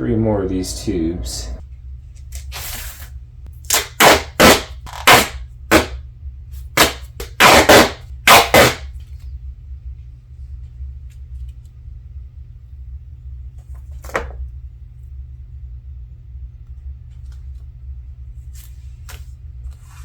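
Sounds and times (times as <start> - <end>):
duct tape ripping off roll: 3.7 - 6.0, 6.8 - 8.9.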